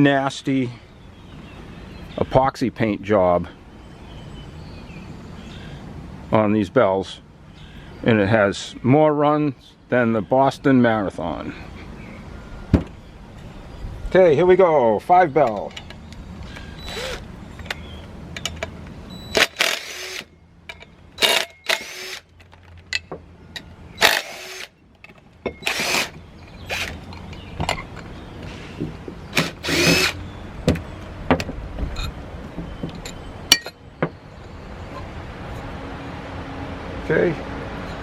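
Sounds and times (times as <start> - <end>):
cordless drill spinning: 16.8 - 17.3, 21.2 - 22.2, 25.6 - 27.0, 29.4 - 30.2.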